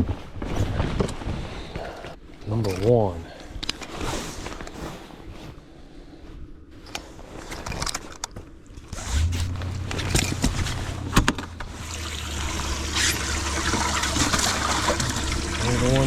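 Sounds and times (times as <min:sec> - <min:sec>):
handling knocks and clicks: 0:06.8 - 0:11.7
pump humming: 0:09.0 - 0:16.0
water trickling and splashing: 0:09.6 - 0:16.0.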